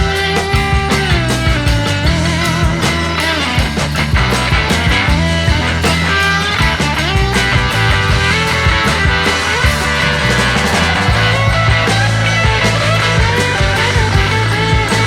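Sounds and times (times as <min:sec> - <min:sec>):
rock music: 0:00.0 - 0:15.0.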